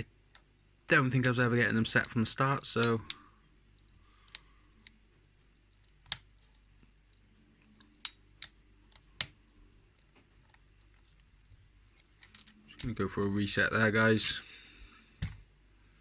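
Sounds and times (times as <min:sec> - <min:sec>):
faint low hum: 0:00.0 - 0:16.0
lock pick clicking pins: 0:12.0 - 0:12.9.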